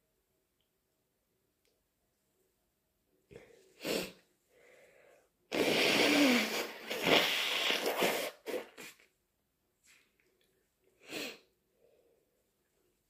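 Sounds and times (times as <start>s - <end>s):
person sneezing: 5.5s - 9.0s.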